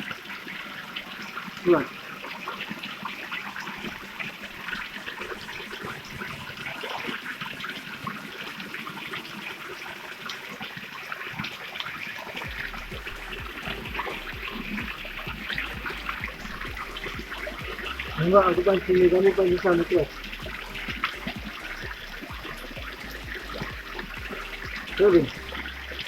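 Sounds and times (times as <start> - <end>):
water splashing over rocks: 0.0 - 26.0
low rumble: 12.5 - 26.0.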